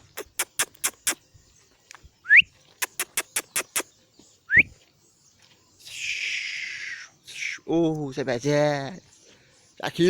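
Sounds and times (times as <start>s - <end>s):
tongue clicks: 0.0s - 1.2s, 1.9s - 3.9s.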